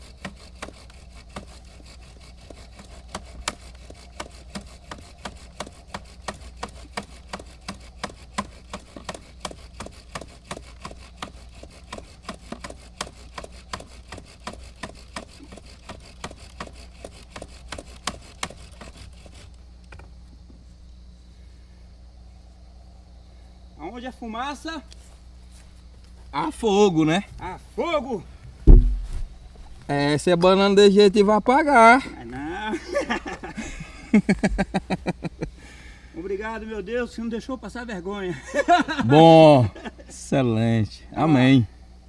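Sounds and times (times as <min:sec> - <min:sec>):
bow drill wood grinding: 0:00.0 - 0:20.6, 0:28.4 - 0:36.0.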